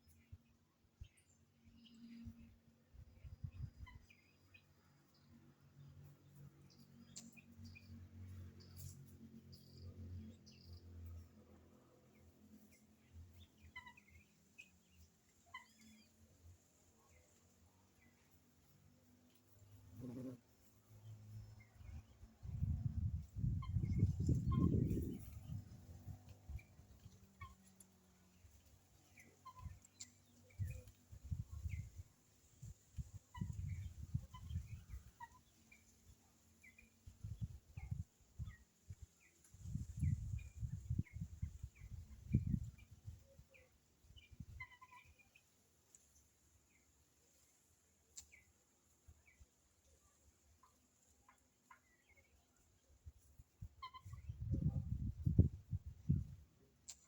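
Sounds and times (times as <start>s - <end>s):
guinea fowl chirping calls: 12.6s - 16.2s, 23.3s - 25.6s, 26.5s - 27.8s, 29.2s - 32.0s, 33.2s - 35.9s, 43.5s - 45.5s, 50.6s - 52.7s, 53.6s - 55.4s.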